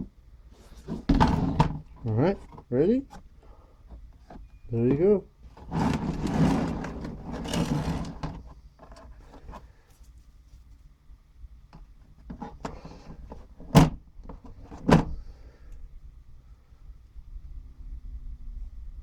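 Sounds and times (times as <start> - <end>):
scraping rustle: 0.6 - 3.2, 3.9 - 10.8.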